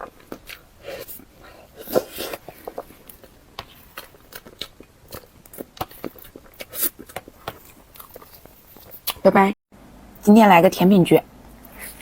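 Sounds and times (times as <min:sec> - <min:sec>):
crunching while chewing food: 0:00.0 - 0:09.2.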